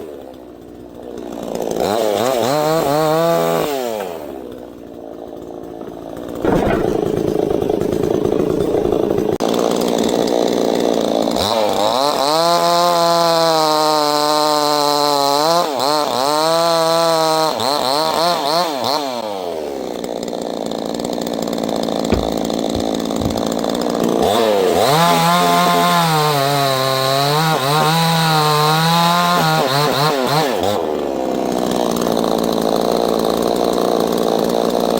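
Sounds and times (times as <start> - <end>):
chainsaw revving and idling: 0.0 - 34.9.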